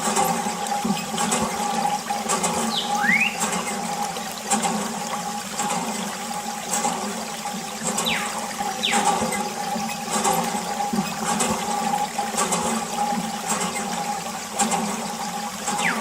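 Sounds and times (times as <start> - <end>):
water running and splashing: 0.0 - 16.0
whistling pitch glides: 2.7 - 3.4, 8.0 - 9.2, 15.7 - 16.0.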